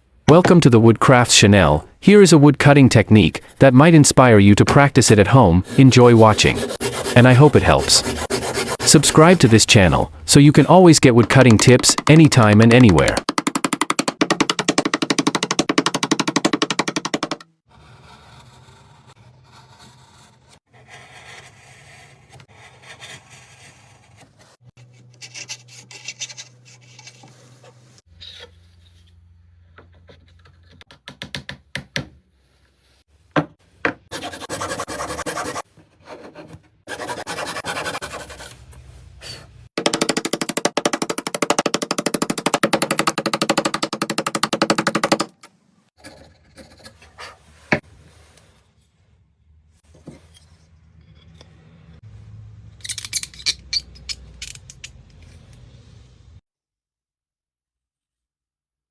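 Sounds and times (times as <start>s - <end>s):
woodworking tools rasping wood: 5.6s - 10.1s, 16.3s - 27.8s, 34.1s - 38.6s.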